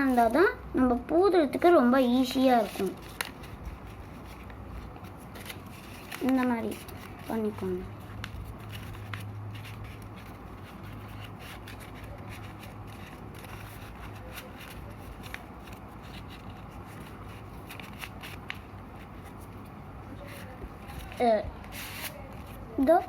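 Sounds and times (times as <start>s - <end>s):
paper being folded: 0.0s - 0.9s, 1.9s - 23.0s.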